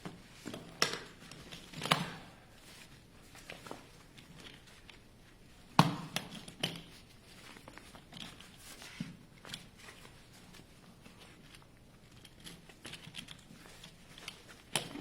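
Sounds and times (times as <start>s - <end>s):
fabric handling rustle: 0.0s - 15.0s
chair poles knocking and clicking: 0.4s - 2.4s, 5.7s - 7.0s, 12.2s - 15.0s.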